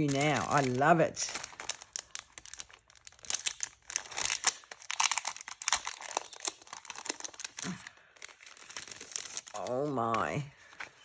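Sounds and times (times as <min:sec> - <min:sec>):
paper rustling and crinkling: 0:00.0 - 0:11.0.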